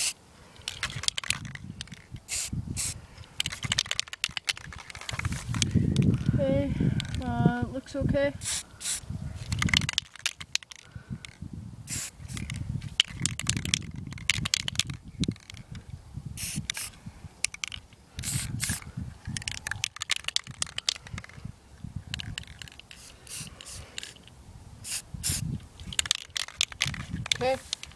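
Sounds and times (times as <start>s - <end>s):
spray can hissing bursts: 2.3s - 4.3s, 8.4s - 9.0s, 11.9s - 12.5s, 16.4s - 16.9s, 18.2s - 18.8s, 22.9s - 24.2s, 24.8s - 25.4s.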